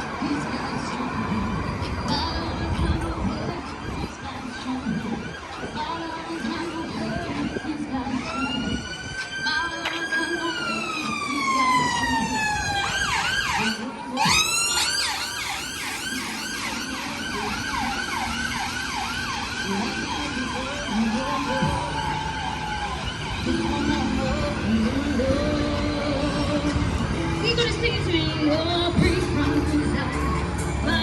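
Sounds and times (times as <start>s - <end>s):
emergency vehicle siren: 0.0s - 31.0s.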